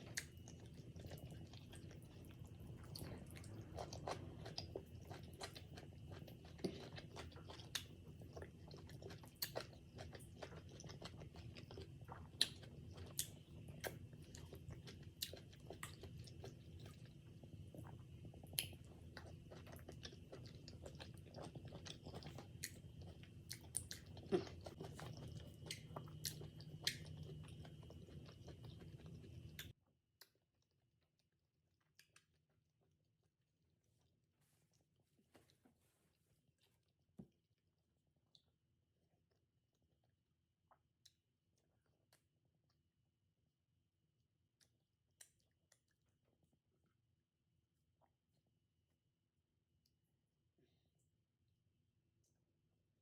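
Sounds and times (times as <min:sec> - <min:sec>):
low steady hum: 0:00.0 - 0:29.8
person chewing food: 0:00.0 - 0:32.9, 0:44.6 - 0:46.5.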